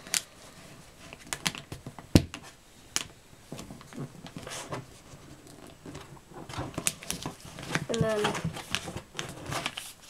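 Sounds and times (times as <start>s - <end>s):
paper being folded and creased: 3.6s - 10.0s.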